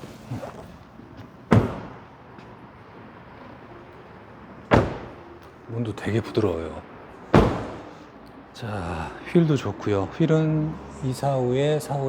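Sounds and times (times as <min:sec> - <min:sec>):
car door thumps: 0:01.5 - 0:02.0, 0:04.7 - 0:05.2, 0:07.3 - 0:07.9.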